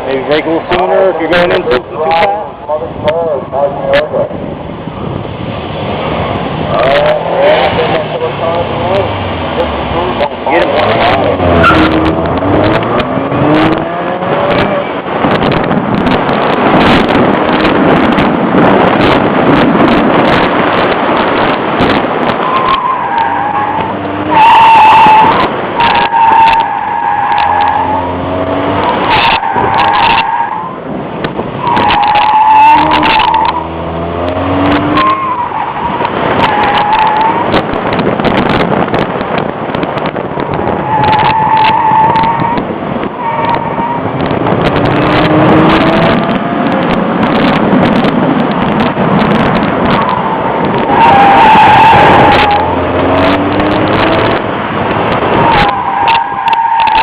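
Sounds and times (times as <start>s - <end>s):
car engine revving: 0.0s - 57.0s
tyres squealing: 6.8s - 14.6s, 31.6s - 37.6s, 49.9s - 54.2s.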